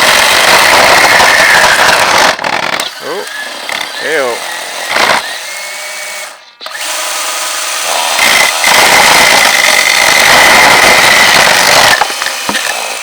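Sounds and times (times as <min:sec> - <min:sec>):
chainsaw cutting log: 0:00.0 - 0:13.0.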